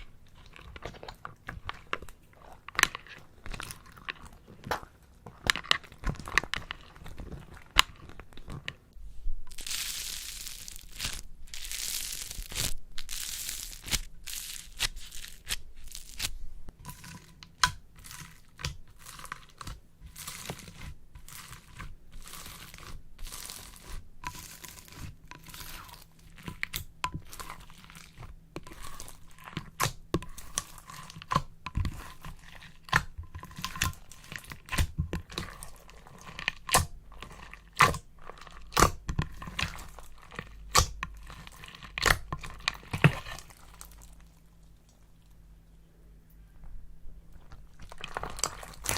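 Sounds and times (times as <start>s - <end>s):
slime crackling and popping: 9.5s - 16.4s, 17.0s - 45.0s, 47.6s - 48.9s
plastic bag crinkling: 9.5s - 16.7s, 18.0s - 29.5s, 47.4s - 48.9s.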